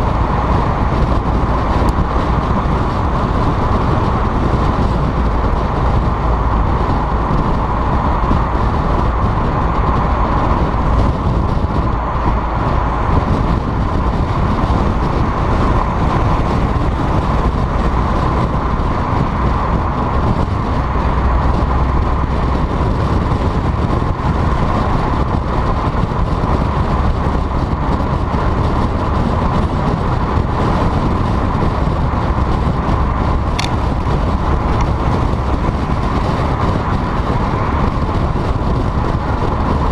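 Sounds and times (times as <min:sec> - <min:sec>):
car engine and exhaust drone: 0:00.0 - 0:39.9
road and wind noise: 0:00.0 - 0:39.9.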